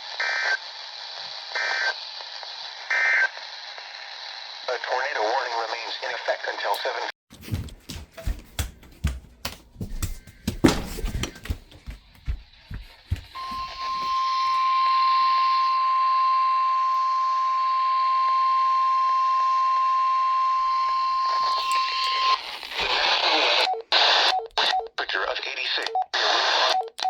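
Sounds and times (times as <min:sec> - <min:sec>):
radio static hiss: 0:00.0 - 0:07.1, 0:22.2 - 0:26.8
static crackles: 0:00.0 - 0:07.1, 0:22.2 - 0:26.8.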